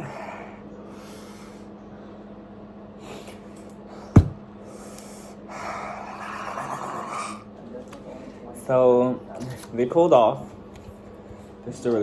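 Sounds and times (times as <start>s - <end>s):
low electrical hum: 0.0s - 12.0s
sharp thump: 4.2s - 4.4s.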